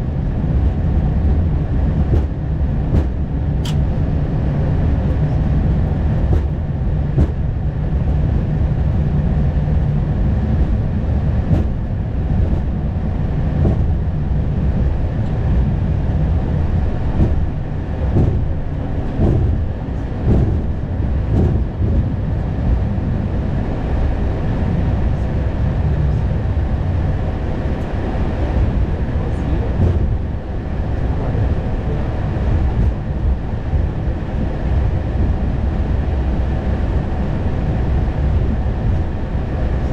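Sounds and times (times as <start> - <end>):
cockpit cabin rumble: 0.0 - 39.9
short knocks and rattles: 2.0 - 3.8, 6.2 - 7.5.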